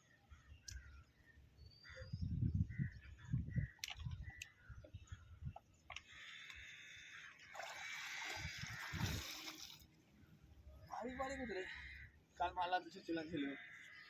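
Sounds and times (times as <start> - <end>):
sea water sloshing and splashing: 7.2 - 10.0.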